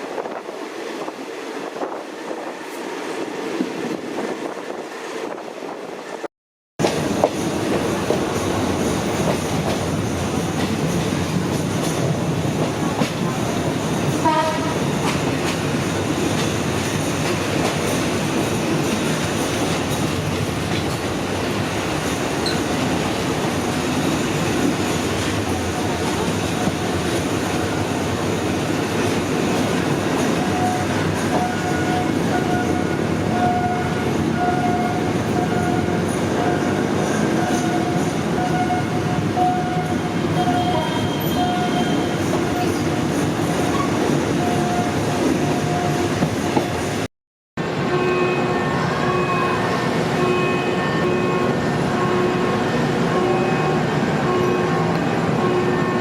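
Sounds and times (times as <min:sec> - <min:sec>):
train wheels clattering on track: 0:06.8 - 0:47.1
train horn: 0:14.2 - 0:14.9, 0:37.4 - 0:42.2, 0:47.9 - 0:56.0.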